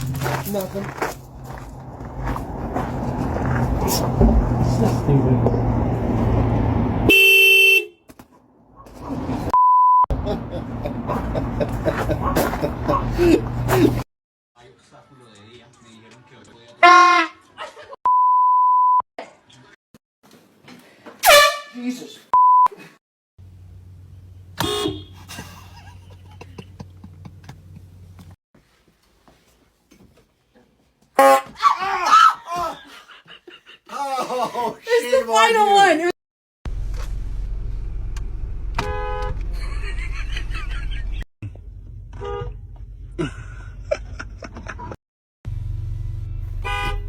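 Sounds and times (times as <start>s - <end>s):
air horn blast: 7.1s - 8.0s, 21.2s - 21.8s, 31.2s - 31.6s, 38.8s - 39.4s, 46.6s - 47.0s.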